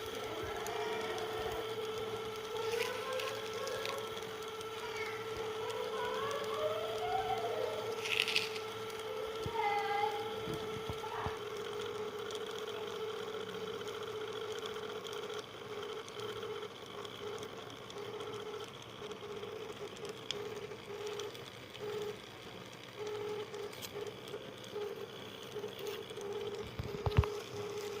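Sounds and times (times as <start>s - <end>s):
concrete mixer motor hum: 0.0s - 28.0s.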